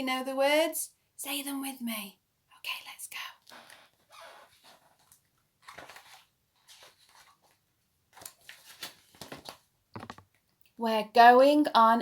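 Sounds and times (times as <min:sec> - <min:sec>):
paper rustling: 0:04.5 - 0:10.2
clicks of book pages turned: 0:05.0 - 0:10.4.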